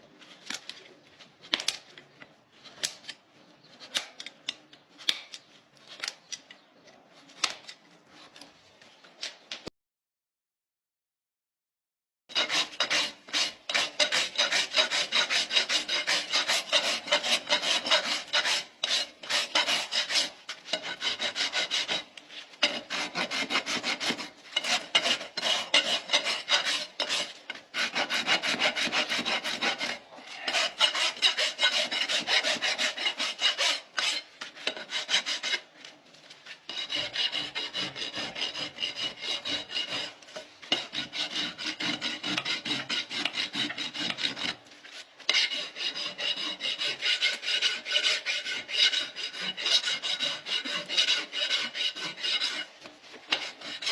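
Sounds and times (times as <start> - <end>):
rasp filing hoof: 12.3 - 35.9, 36.5 - 53.9.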